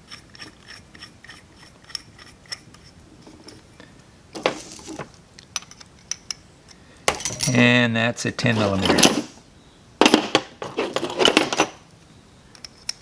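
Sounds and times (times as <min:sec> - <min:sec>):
handling clatter: 0:04.4 - 0:05.8, 0:07.1 - 0:07.8, 0:08.4 - 0:09.4, 0:10.0 - 0:11.9.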